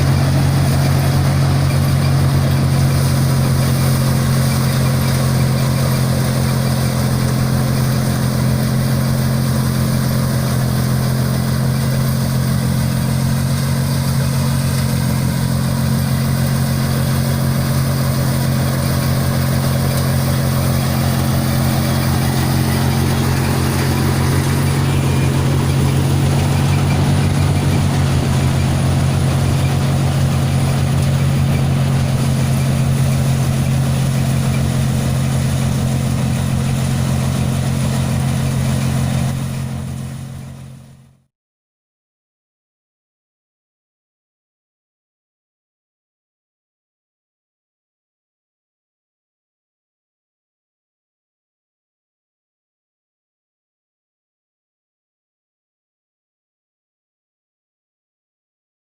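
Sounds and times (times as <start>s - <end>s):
tractor diesel engine running: 0.0s - 41.3s.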